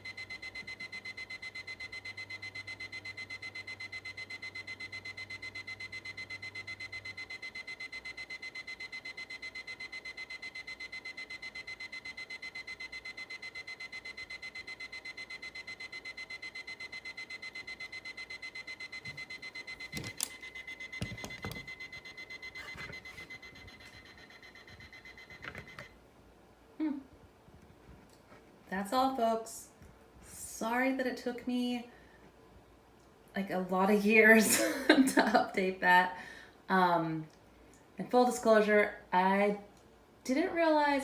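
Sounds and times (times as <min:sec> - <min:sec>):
alarm clock beeping: 0:00.0 - 0:25.9
sharp clicks and knocks: 0:19.0 - 0:24.0, 0:24.7 - 0:25.9.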